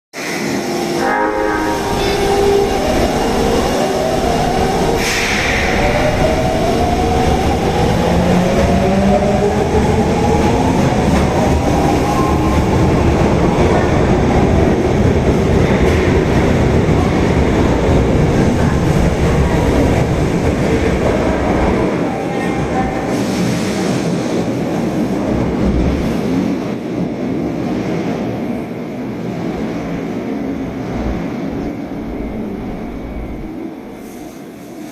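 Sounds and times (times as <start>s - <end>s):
subway train motors whining: 0.2s - 34.9s
rumble from rails: 27.6s - 34.9s.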